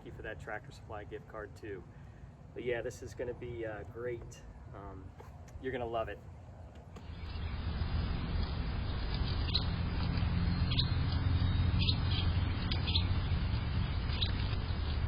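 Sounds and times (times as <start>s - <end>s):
small bird chirping: 7.0s - 15.0s.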